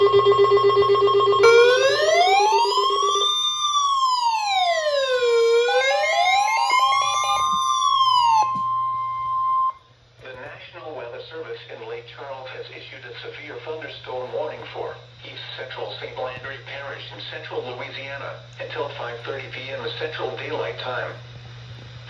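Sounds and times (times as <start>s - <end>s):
high pulsing alert beep: 0.0s - 3.4s
electronic siren wail: 0.0s - 9.8s.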